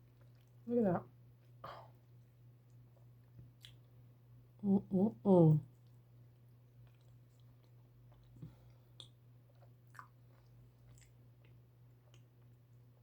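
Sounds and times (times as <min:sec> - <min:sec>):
low steady hum: 0:00.0 - 0:13.0
chewing mouth clicks and smacks: 0:00.1 - 0:00.6, 0:01.4 - 0:03.9, 0:06.7 - 0:12.7.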